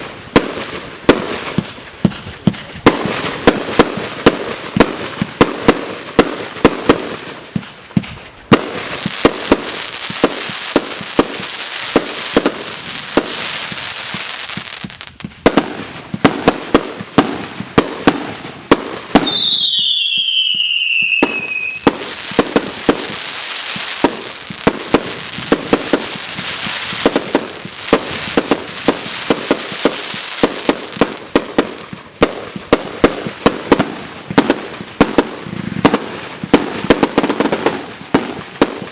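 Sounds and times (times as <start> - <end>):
fireworks bangs and crackling: 0.0 - 38.9
falling firework whistle: 19.2 - 27.2.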